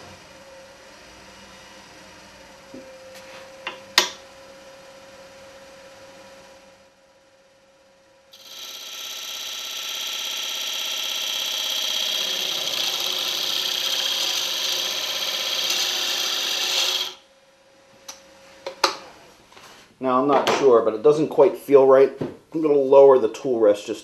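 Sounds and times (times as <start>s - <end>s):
lathe tool scraping wood: 8.4s - 17.2s.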